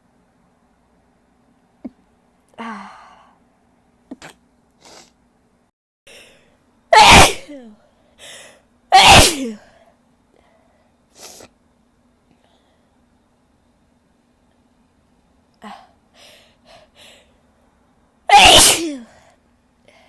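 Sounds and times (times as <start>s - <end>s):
woman sneezing: 7.0s - 7.7s, 9.0s - 9.6s, 18.3s - 19.2s
short breath: 15.8s - 17.4s.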